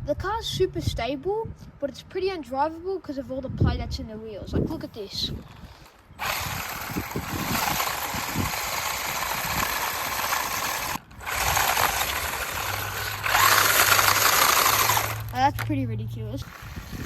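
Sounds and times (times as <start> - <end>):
rc car motor whirring: 5.5 - 15.7, 16.4 - 17.0.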